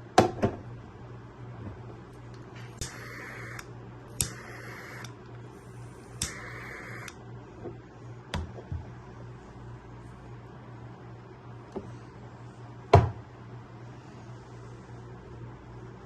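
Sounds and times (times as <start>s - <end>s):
spray bottle click and hiss: 6.2s - 7.2s.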